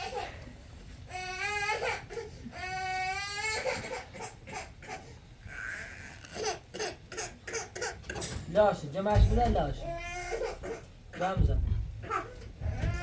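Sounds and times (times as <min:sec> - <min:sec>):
infant crying: 0:01.1 - 0:08.1, 0:09.8 - 0:11.3, 0:12.0 - 0:13.0.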